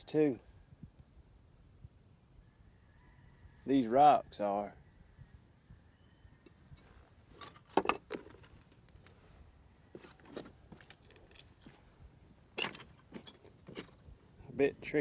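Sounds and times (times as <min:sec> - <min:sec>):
footsteps on rocky ground: 0:09.9 - 0:11.9, 0:12.5 - 0:14.2.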